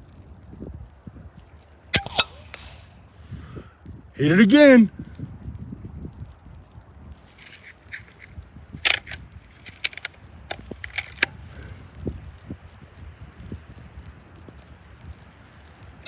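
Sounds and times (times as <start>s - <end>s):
air rifle clicks and knocks: 7.4s - 11.4s.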